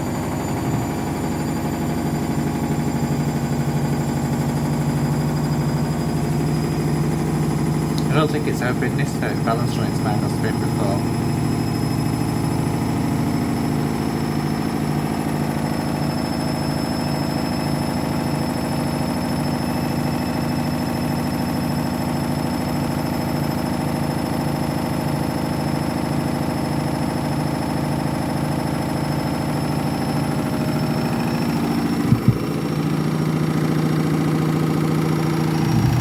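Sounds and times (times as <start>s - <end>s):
washing machine drum throbbing: 0.0s - 36.0s
brief knock: 32.1s - 32.5s.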